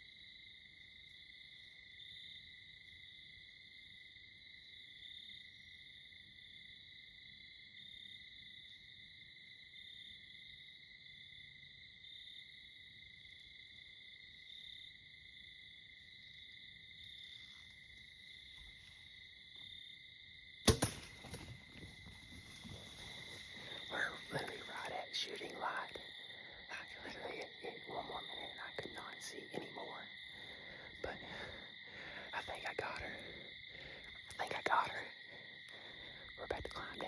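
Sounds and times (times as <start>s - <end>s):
crickets and insects chirping: 0.0s - 37.0s
sharp thwack of bow shot: 20.7s - 21.6s
irregular rustling: 20.7s - 23.8s.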